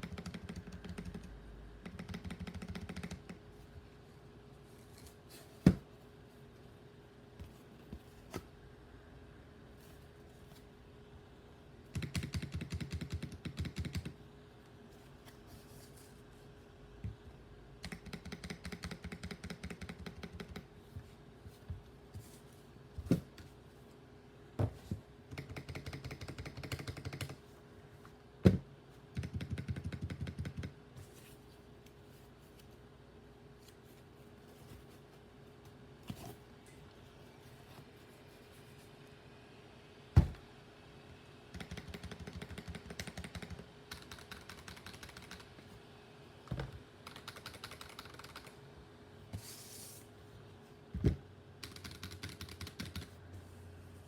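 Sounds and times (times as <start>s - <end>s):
mechanical keyboard typing: 0.0s - 3.4s, 11.9s - 14.2s, 17.8s - 20.7s, 25.3s - 27.4s, 29.2s - 30.8s, 41.5s - 45.6s, 47.0s - 48.6s, 51.6s - 53.2s.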